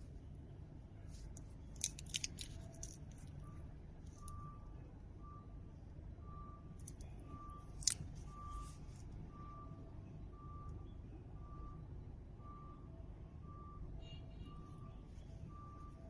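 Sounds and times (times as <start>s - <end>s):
reversing alarm beeping: 6.2s - 16.0s.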